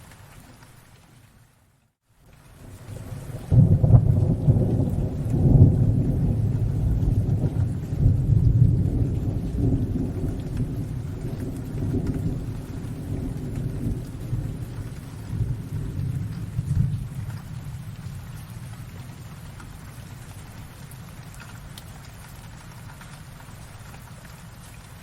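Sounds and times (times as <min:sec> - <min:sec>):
steady rainfall: 0:00.0 - 0:25.0
rolling thunder: 0:02.8 - 0:20.2.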